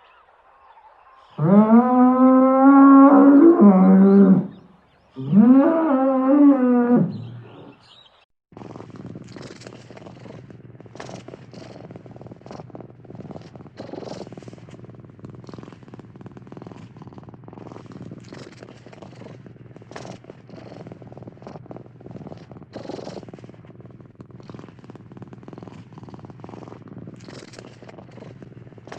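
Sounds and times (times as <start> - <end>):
cat purring: 8.6 - 28.9.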